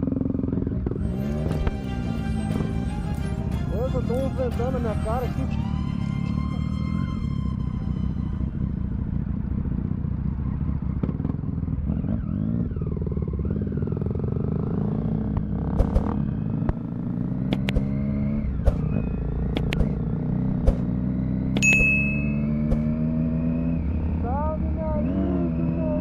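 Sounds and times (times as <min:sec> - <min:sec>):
motorcycle engine running: 0:00.0 - 0:26.0
sharp clicks: 0:17.5 - 0:17.9, 0:19.5 - 0:20.0.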